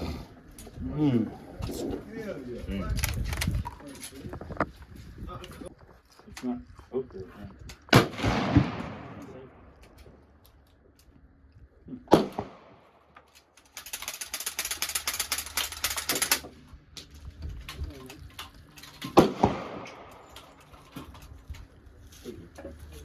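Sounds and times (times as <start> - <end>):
gunshots with echo: 7.9 - 9.7, 12.1 - 12.9, 19.2 - 20.2
rapid rattling clicks: 13.2 - 19.2.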